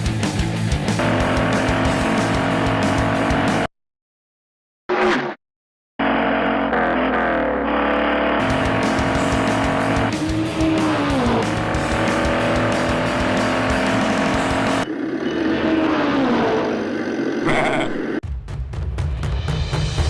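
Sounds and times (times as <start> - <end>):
rock music: 0.0 - 3.7, 8.4 - 14.9.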